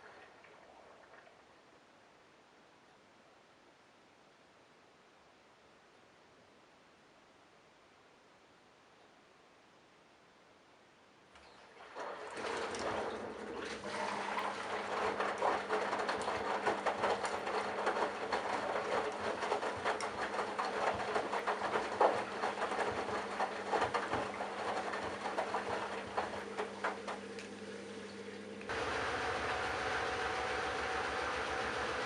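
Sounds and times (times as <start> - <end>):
laundry sloshing and clicking: 11.4 - 32.0
washing machine motor hum: 11.7 - 32.0.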